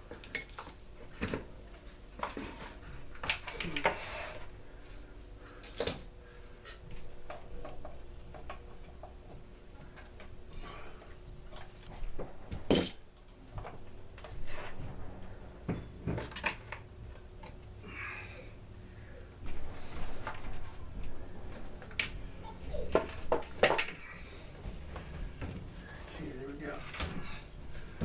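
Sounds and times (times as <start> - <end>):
faint steady hum: 0.0 - 28.0
tools and parts clinking: 0.2 - 1.4, 5.6 - 6.1, 10.9 - 13.5.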